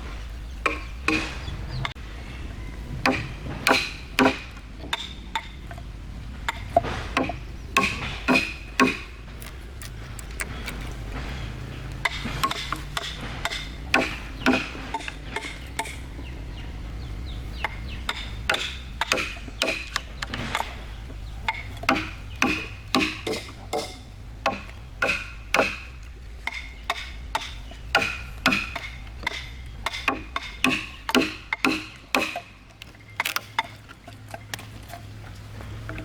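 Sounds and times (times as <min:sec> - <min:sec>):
hammer striking wood: 0:00.7 - 0:01.5, 0:03.0 - 0:05.5, 0:06.8 - 0:09.9, 0:12.0 - 0:16.0, 0:18.1 - 0:20.6, 0:21.5 - 0:32.6.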